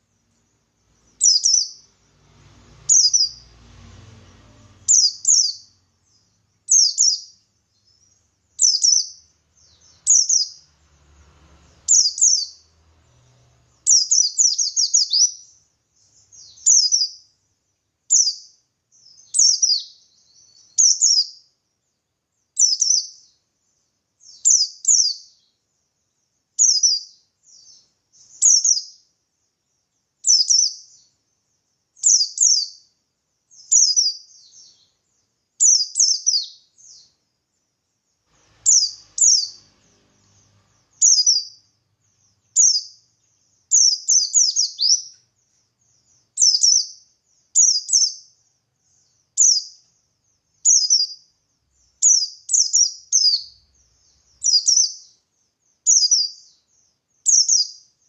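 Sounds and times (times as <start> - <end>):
bird singing high chirpy phrases: 0.0 - 58.0.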